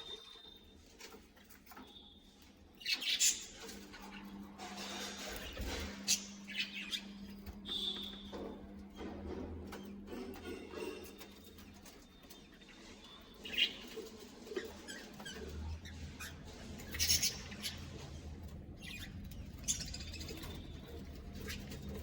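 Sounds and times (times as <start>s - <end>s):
budgerigars chirping: 12.6s - 18.0s.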